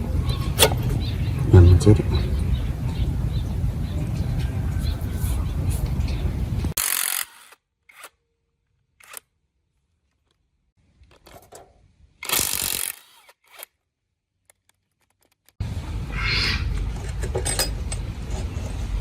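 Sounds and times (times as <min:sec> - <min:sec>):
tool-work noise bursts: 0:06.8 - 0:08.2, 0:12.2 - 0:13.7.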